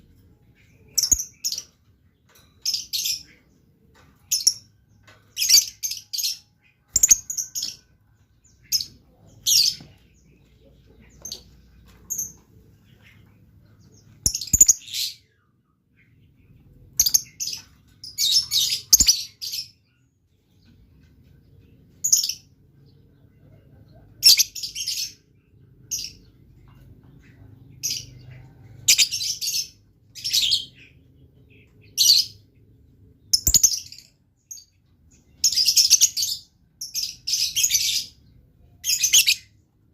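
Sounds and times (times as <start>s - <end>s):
lovebird chirping: 0.0s - 3.5s, 4.2s - 15.3s, 16.4s - 20.0s, 24.2s - 26.3s, 27.2s - 32.4s, 33.2s - 39.5s.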